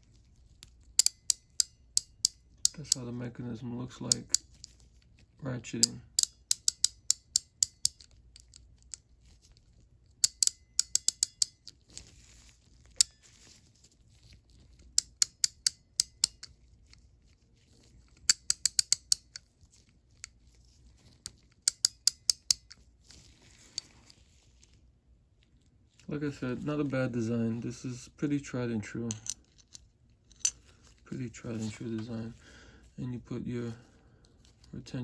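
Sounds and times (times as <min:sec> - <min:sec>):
ratchet clicking: 0:01.0 - 0:03.0, 0:04.1 - 0:04.7, 0:05.8 - 0:09.0, 0:10.2 - 0:11.7, 0:15.0 - 0:16.5, 0:18.3 - 0:19.4, 0:21.7 - 0:22.8
faint handling rustles: 0:22.7 - 0:28.1, 0:28.8 - 0:35.0.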